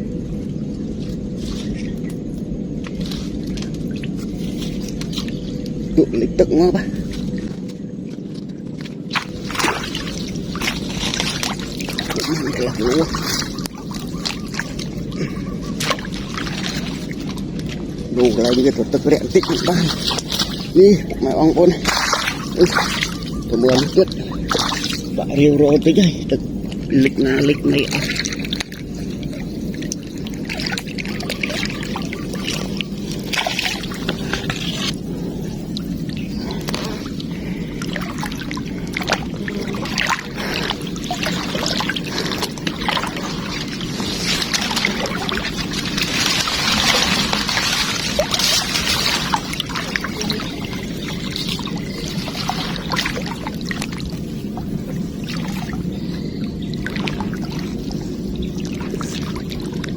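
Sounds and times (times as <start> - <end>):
steady low hum: 0.0 - 59.9
steady low rumble: 0.0 - 59.9
water splashing and trickling: 0.0 - 59.9.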